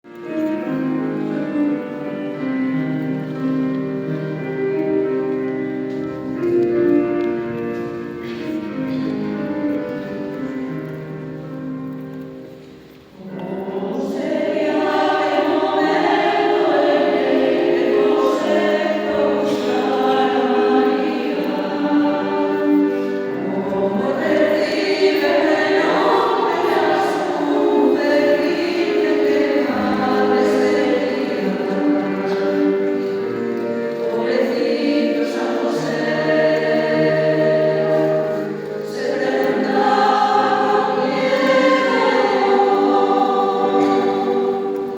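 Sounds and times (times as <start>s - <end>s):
choir singing in harmony: 13.1s - 44.9s.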